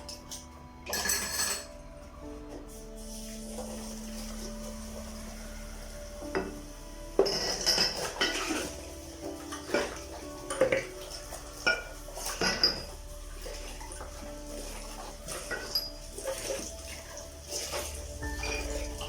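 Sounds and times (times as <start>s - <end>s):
dishes and cutlery clinking: 0.0s - 1.9s, 7.2s - 19.0s.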